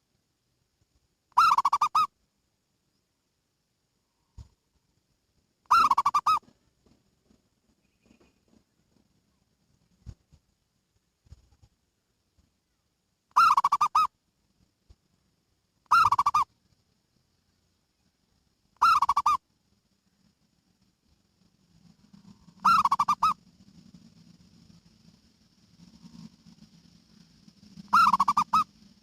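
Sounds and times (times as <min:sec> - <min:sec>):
faint low hum: 0:00.0 - 0:29.0
dove cooing: 0:01.4 - 0:02.1, 0:05.7 - 0:06.5, 0:13.4 - 0:14.1, 0:15.9 - 0:16.5, 0:18.8 - 0:19.4, 0:22.3 - 0:23.4, 0:27.8 - 0:28.8.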